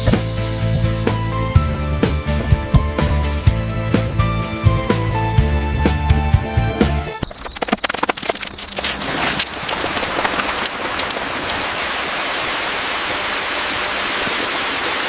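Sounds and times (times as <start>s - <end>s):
crackles and clicks: 7.2s - 11.8s
rain-like hiss and patter: 8.3s - 15.0s.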